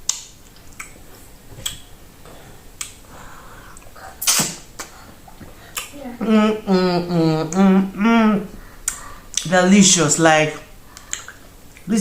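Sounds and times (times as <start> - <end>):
wet mouth smacks and clicks: 0.0 - 1.0, 2.8 - 3.0, 3.8 - 6.0, 8.8 - 9.5, 10.9 - 11.9.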